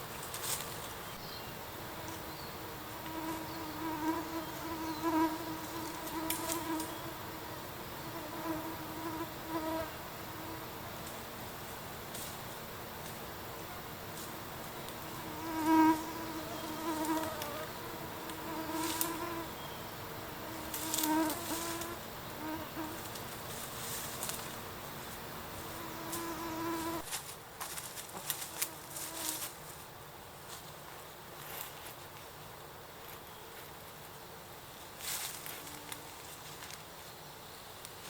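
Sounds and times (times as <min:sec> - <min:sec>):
flying insect buzzing: 0:00.2 - 0:27.3, 0:28.0 - 0:29.6.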